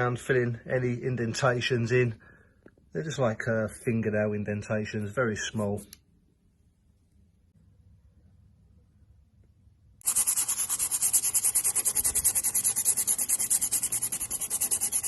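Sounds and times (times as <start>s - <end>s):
sandpaper rubbing on metal panel: 10.0s - 15.0s.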